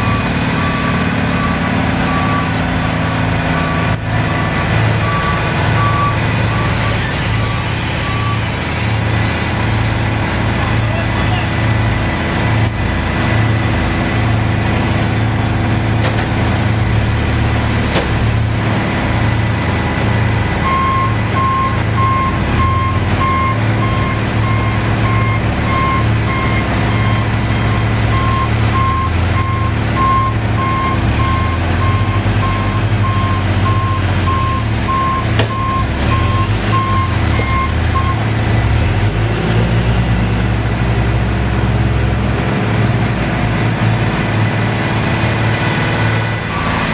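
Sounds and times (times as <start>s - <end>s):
reversing alarm beeping: 0.0s - 9.0s, 20.6s - 38.3s, 44.2s - 46.9s
heavy diesel machinery drone: 0.0s - 46.9s.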